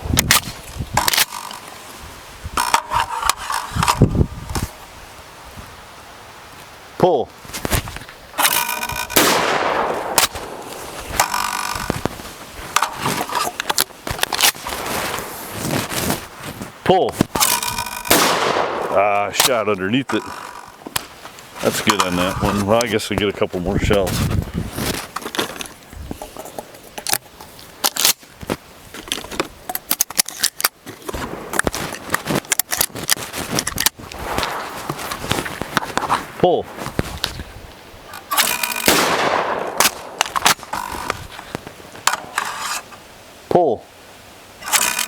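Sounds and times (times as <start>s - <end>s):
shotgun shells clicking and rattling: 1.0s - 1.8s, 8.4s - 12.0s, 17.3s - 20.8s, 21.7s - 22.5s, 29.0s - 30.8s, 38.1s - 41.4s, 44.6s - 45.0s
shotgun shot with echo: 8.4s - 11.3s, 18.1s - 19.5s, 38.8s - 40.2s
shotgun slide action clicks: 44.6s - 45.0s.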